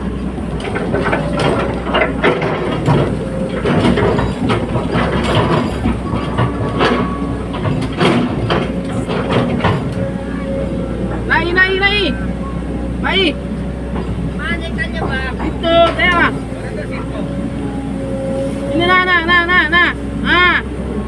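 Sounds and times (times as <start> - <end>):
excavator diesel engine running: 0.0 - 21.0
metallic clanks and knocks: 0.1 - 11.3, 13.8 - 17.4.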